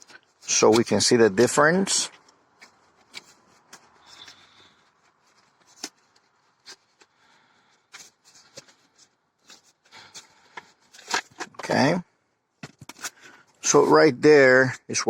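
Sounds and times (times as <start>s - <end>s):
packaging rustling: 2.1s - 11.6s.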